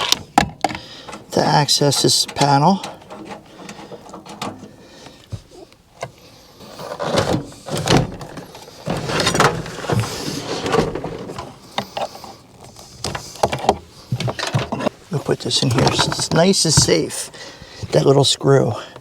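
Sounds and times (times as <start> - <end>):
scraping or rustling: 0.8 - 17.3.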